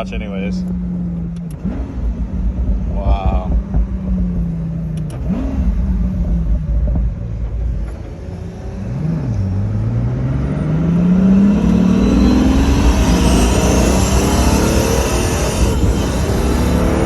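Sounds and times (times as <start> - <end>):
car engine accelerating: 0.0 - 17.0
high turbo whistle: 11.4 - 17.0.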